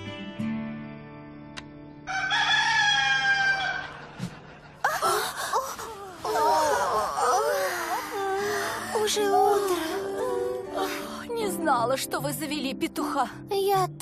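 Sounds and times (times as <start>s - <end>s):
rooster crowing: 2.0s - 4.1s.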